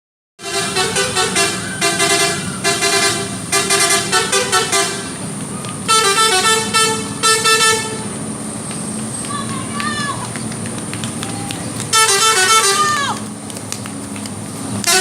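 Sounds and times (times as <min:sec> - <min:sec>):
bus musical horn playing tune: 0:00.4 - 0:08.3, 0:11.8 - 0:13.2, 0:14.8 - 0:15.0.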